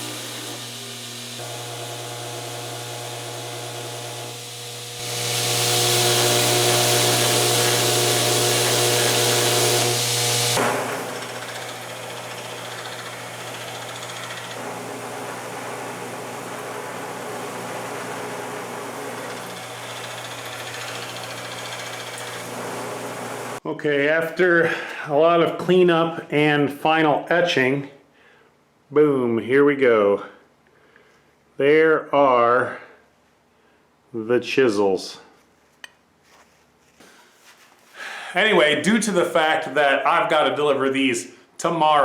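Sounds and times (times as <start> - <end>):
electric grinder grinding steel: 0.0 - 23.6.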